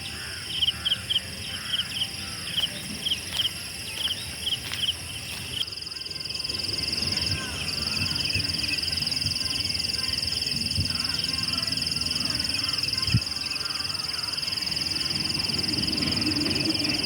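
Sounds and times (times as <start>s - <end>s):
bird calls: 0.0s - 5.7s
insect chorus buzzing: 0.0s - 17.0s.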